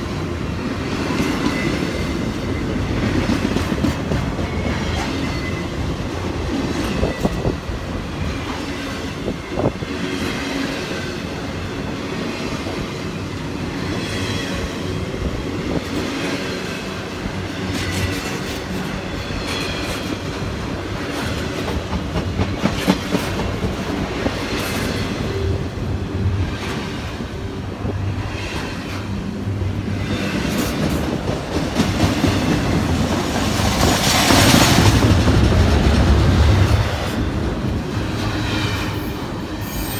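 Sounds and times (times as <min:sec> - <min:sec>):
train wheels clacking over rail joints: 0:00.9 - 0:05.6, 0:17.3 - 0:25.5, 0:28.0 - 0:39.0.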